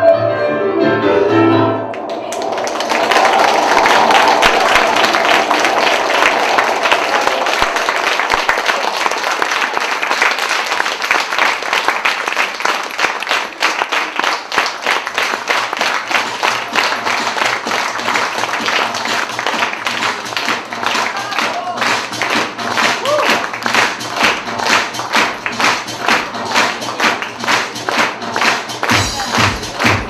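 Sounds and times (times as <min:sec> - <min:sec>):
music: 0:00.0 - 0:12.0, 0:12.6 - 0:30.0
audience applauding: 0:01.9 - 0:30.0.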